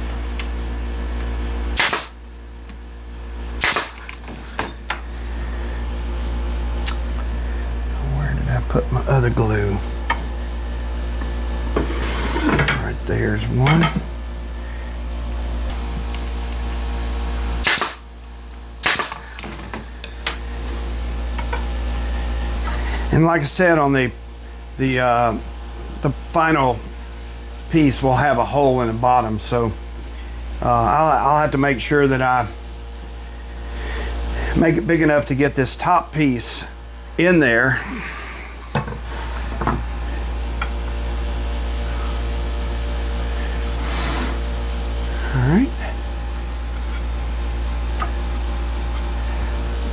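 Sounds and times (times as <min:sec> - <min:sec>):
steady low hum: 0:00.0 - 0:49.9
nail gun firing: 0:01.8 - 0:02.2, 0:03.6 - 0:04.2, 0:17.6 - 0:18.0, 0:18.8 - 0:19.5
machine humming: 0:36.3 - 0:49.9.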